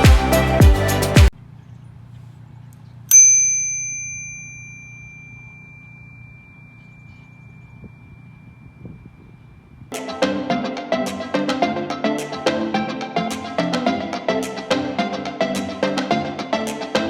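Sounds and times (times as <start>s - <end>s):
bicycle bell ding: 3.1s - 9.8s.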